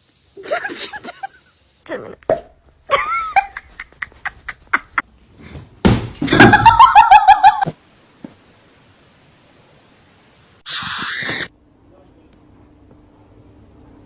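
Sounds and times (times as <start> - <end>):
person laughing hard: 0.4 - 2.2, 2.9 - 5.0, 6.2 - 7.7.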